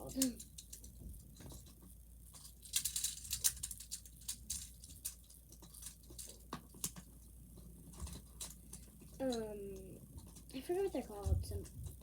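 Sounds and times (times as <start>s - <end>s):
plastic toys clicking: 0.0s - 1.8s, 2.4s - 7.1s.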